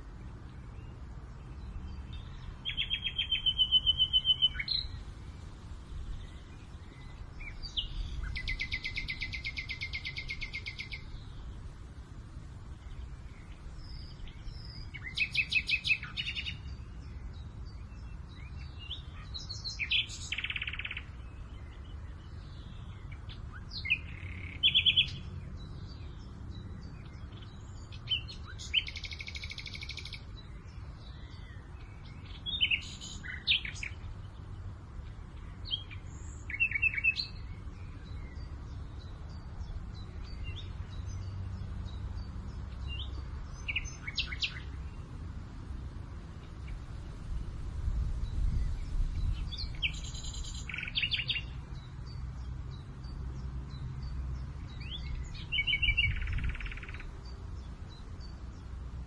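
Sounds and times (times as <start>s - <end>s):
low wind rumble: 0.0s - 59.0s
songbirds chirping and trilling: 0.0s - 59.0s.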